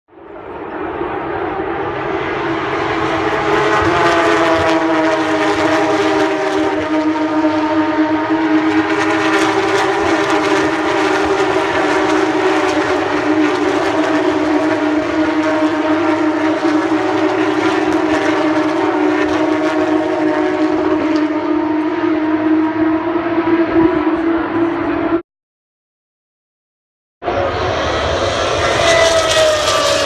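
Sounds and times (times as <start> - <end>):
race car engines at high revs: 0.3 - 25.2, 27.2 - 30.0.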